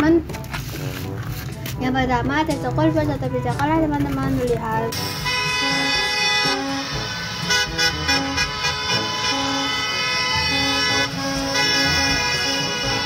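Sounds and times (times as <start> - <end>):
toy electronic horn tone: 5.0 - 13.0.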